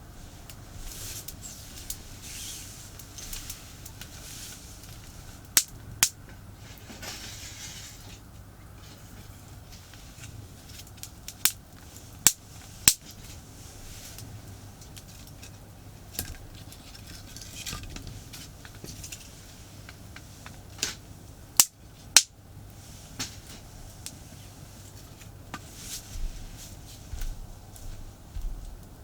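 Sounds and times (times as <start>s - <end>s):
wood fire crackling: 0.0s - 29.0s
loud snaps of fire: 0.4s - 8.2s, 9.7s - 16.5s, 18.3s - 26.0s.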